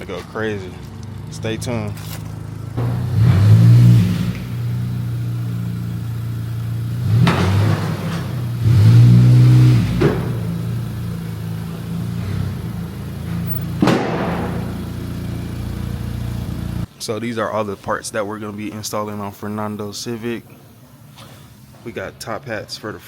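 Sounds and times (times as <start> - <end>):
car engine idling and revving: 0.0 - 17.0.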